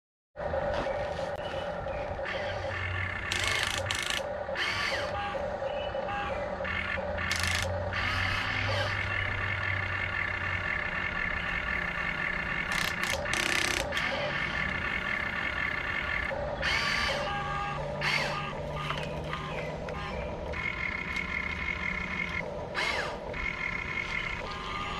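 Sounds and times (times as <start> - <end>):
toy electric motors whining: 0.6 - 24.9.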